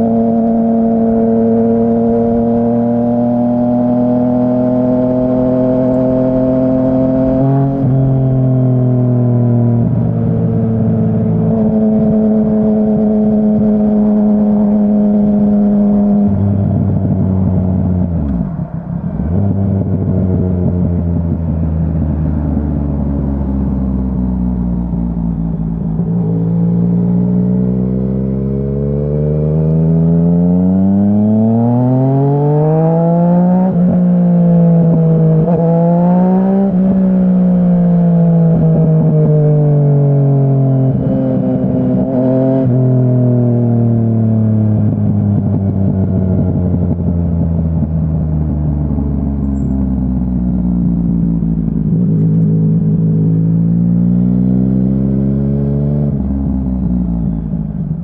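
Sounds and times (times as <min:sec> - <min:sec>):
motorcycle engine revving: 0:00.0 - 0:58.0.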